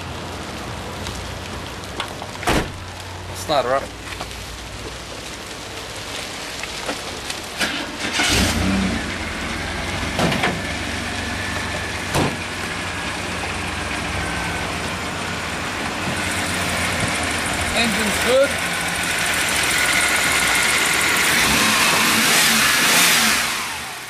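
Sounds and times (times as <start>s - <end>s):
car engine idling: 7.0s - 24.0s
engine starter cranking: 7.6s - 8.9s.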